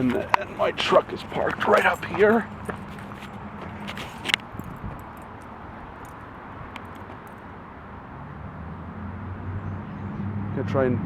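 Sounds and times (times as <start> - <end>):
vehicle engine hum: 0.0 - 11.0.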